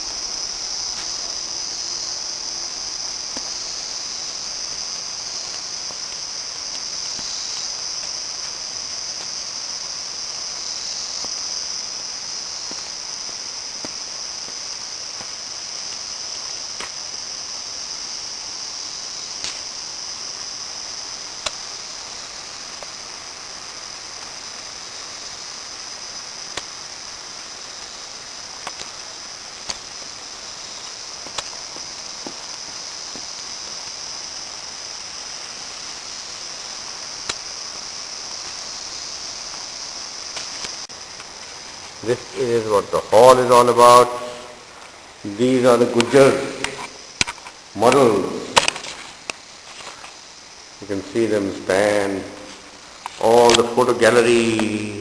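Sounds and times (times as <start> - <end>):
insects droning: 0.0 - 55.0
sharp clicks: 46.0 - 49.4, 53.0 - 53.8.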